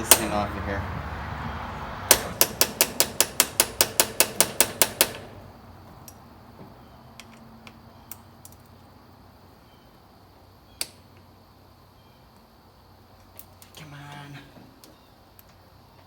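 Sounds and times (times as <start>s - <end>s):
hammer tapping on metal: 2.1s - 5.3s.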